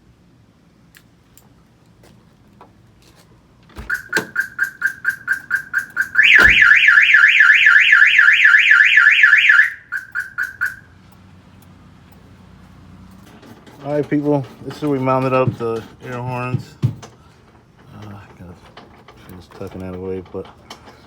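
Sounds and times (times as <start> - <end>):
car alarm beeps: 3.8 - 10.9
car alarm warble: 3.8 - 10.9.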